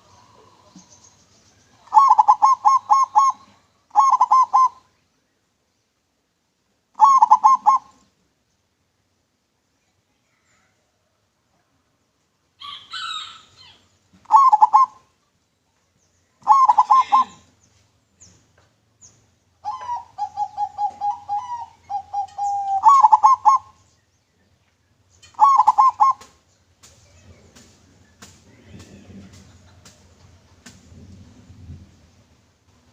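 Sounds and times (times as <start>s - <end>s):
dove cooing: 1.8s - 4.9s, 7.0s - 8.1s, 14.2s - 15.1s, 16.4s - 17.5s, 19.6s - 23.8s, 25.3s - 26.3s.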